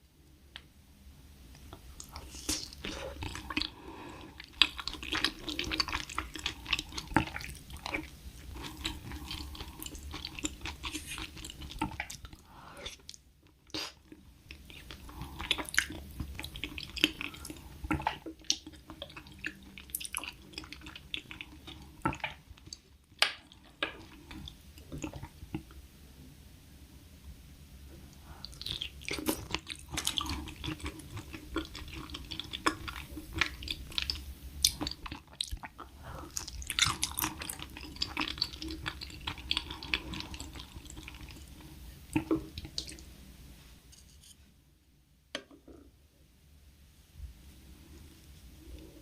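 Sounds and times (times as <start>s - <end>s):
person chewing: 1.7s - 25.3s, 28.4s - 43.0s.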